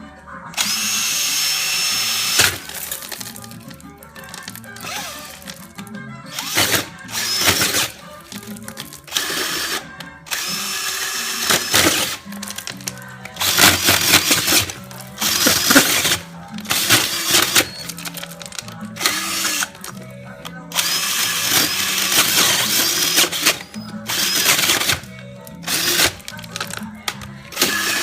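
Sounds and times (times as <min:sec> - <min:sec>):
background music: 0:00.0 - 0:28.0
power drill hole saw cutting pipe: 0:00.6 - 0:03.2, 0:04.8 - 0:05.5, 0:06.3 - 0:08.0, 0:09.1 - 0:12.6, 0:13.4 - 0:19.9, 0:20.7 - 0:28.0.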